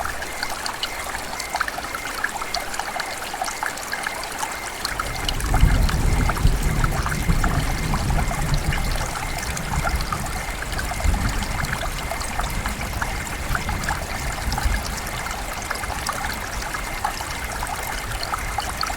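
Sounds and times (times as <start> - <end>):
heavy rain with dripping: 0.0 - 18.9
distant thunder rumble: 5.0 - 18.9.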